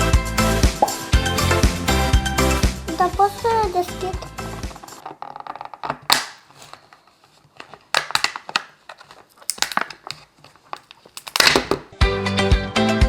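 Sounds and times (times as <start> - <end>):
packaging crinkling and rustling: 4.7 - 11.9.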